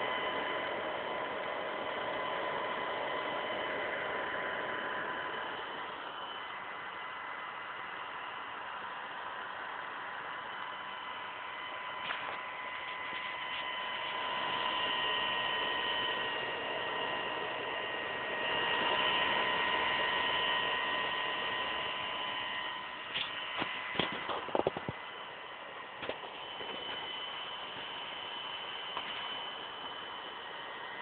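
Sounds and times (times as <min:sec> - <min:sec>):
laptop cooling fan whining: 0:00.0 - 0:31.0.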